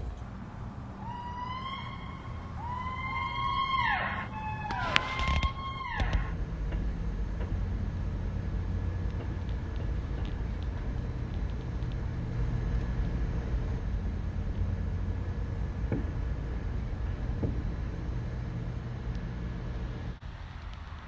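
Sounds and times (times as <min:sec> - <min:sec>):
faint knocks: 0:00.0 - 0:06.3
low rumble with hum: 0:00.0 - 0:21.0.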